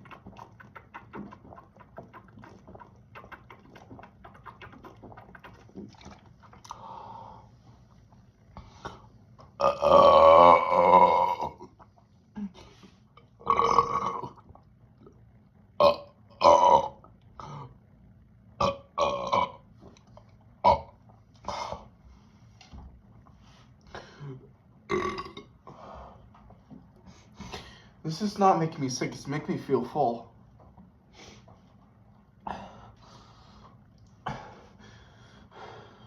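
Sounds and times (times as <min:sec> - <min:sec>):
person burping loudly: 0:09.6 - 0:11.8, 0:13.3 - 0:14.6, 0:15.8 - 0:17.7, 0:18.6 - 0:19.6, 0:20.6 - 0:21.8, 0:24.2 - 0:25.5.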